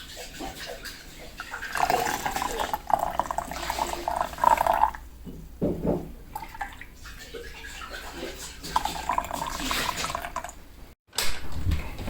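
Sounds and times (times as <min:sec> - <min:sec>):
water pouring and splashing: 0:00.0 - 0:05.0, 0:06.3 - 0:10.6.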